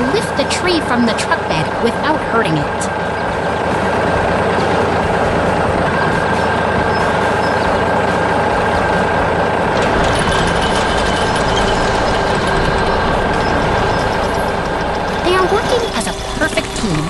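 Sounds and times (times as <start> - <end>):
construction machinery engines: 0.0 - 17.0
light high clatter: 9.8 - 17.0.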